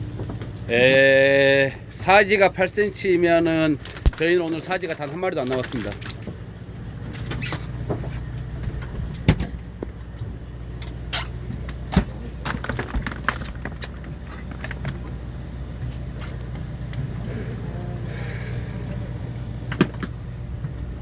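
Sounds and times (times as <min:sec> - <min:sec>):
boat engine humming: 0:00.0 - 0:21.0
clicks and rattles: 0:03.8 - 0:07.4, 0:10.8 - 0:15.2.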